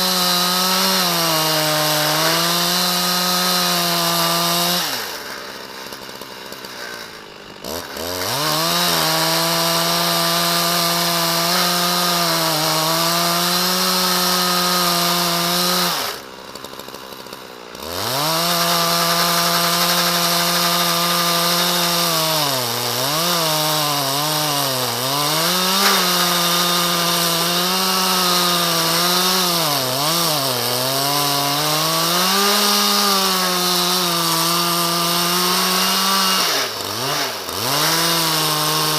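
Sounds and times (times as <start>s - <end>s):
chainsaw revving and cutting: 0.0s - 38.9s.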